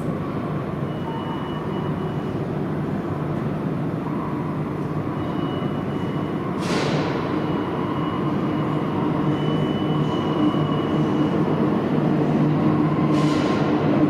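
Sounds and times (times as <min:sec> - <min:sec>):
subway train rumbling: 0:00.0 - 0:14.0
faint high wheel squeal: 0:00.8 - 0:02.5, 0:04.1 - 0:11.6.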